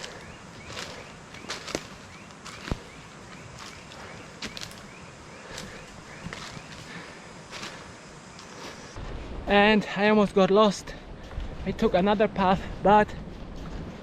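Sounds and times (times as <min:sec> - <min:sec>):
footsteps crunching through undergrowth: 0:00.0 - 0:09.3
rainforest ambience: 0:00.0 - 0:13.8.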